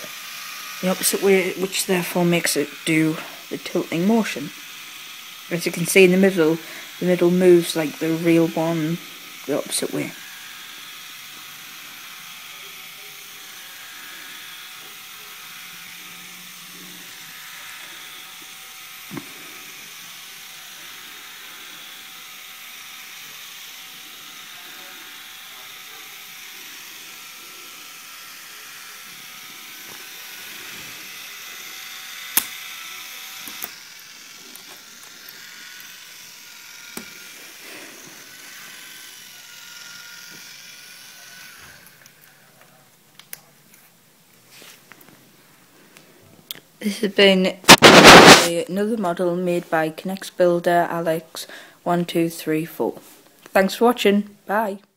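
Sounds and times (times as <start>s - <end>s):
small motors whirring: 0.0s - 43.5s.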